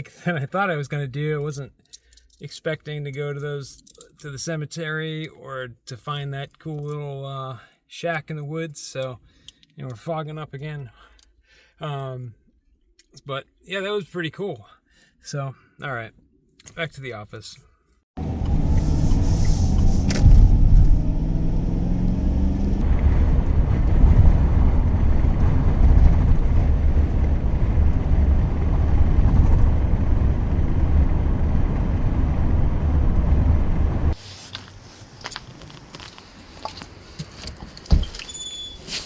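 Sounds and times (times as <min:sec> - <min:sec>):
van engine and road rumble: 0:18.2 - 0:39.0.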